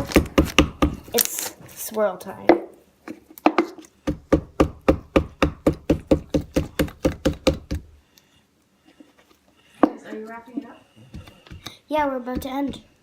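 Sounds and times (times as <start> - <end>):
slime being stirred: 5.2 - 8.2.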